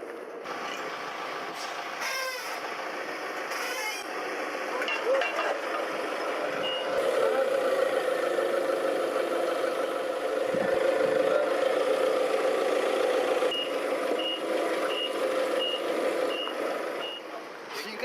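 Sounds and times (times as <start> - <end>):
heavy machine engine running: 0.0 - 17.7
reversing alarm beeping: 6.6 - 7.0, 13.5 - 17.3.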